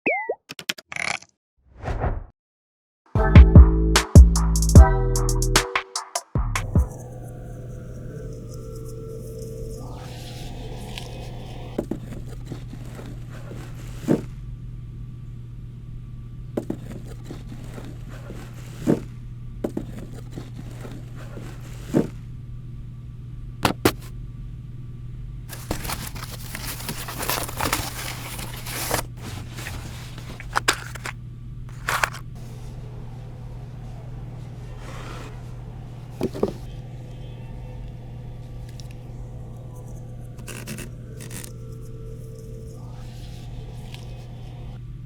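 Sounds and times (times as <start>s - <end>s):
steady low hum: 6.6s - 45.0s
cardboard scraping and rustling: 16.6s - 19.1s, 19.7s - 22.2s, 23.6s - 24.1s, 25.5s - 32.7s, 34.8s - 35.4s, 36.1s - 36.7s, 39.8s - 44.2s.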